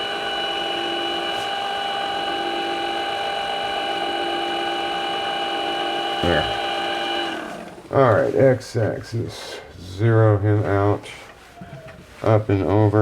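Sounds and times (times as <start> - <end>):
milling machine spindle whining: 0.0 - 8.4.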